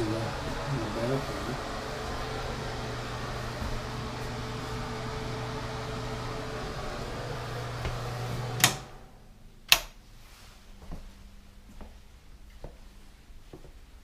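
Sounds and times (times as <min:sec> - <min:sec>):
low machine hum with hiss: 0:00.0 - 0:14.0
sharp clicks: 0:09.7 - 0:10.0.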